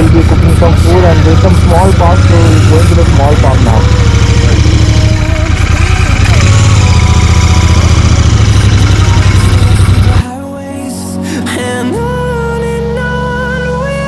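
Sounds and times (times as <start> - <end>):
vehicle engine rumbling: 0.0 - 10.3.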